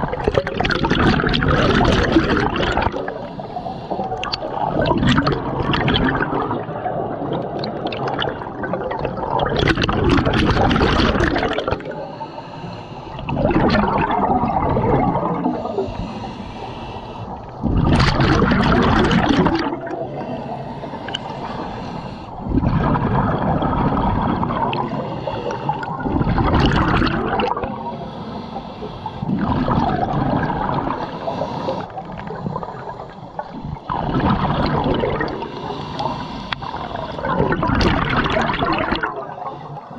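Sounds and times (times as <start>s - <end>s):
bubbles gurgling underwater: 0.0s - 3.4s, 4.0s - 12.1s, 13.1s - 15.9s, 17.3s - 20.3s, 22.4s - 27.9s, 29.2s - 39.9s
regulator hiss: 27.8s - 29.2s, 35.4s - 37.3s.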